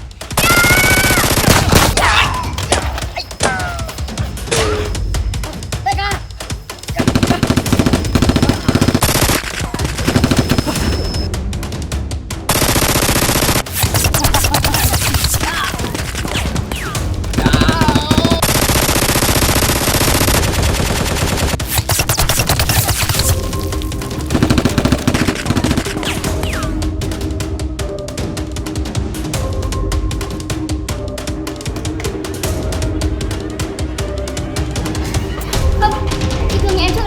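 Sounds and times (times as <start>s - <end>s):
background music: 0.0s - 37.0s
machine-gun fire: 0.4s - 2.0s, 6.9s - 11.3s, 12.5s - 23.4s, 24.2s - 26.6s.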